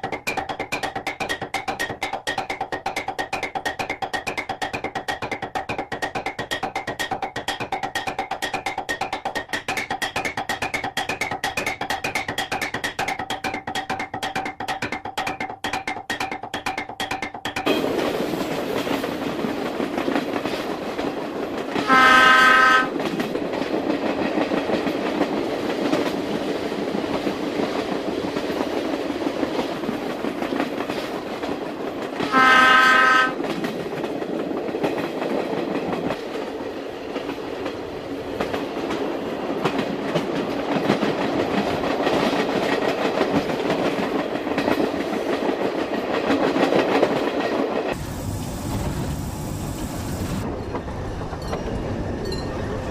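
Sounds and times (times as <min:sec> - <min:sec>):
train wheel clatter and rumble: 0:00.0 - 0:52.9
train horn blasts: 0:21.8 - 0:23.0, 0:32.2 - 0:33.4.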